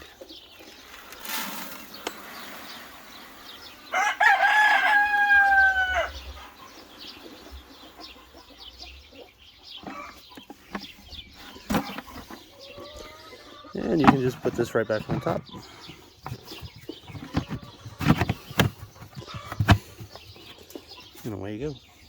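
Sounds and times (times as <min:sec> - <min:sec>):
chickens clucking: 0:00.0 - 0:22.0
rooster crowing: 0:03.9 - 0:06.5.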